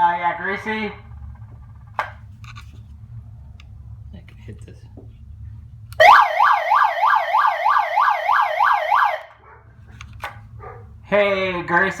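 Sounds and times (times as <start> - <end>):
electronic police siren wailing: 6.0 - 9.4.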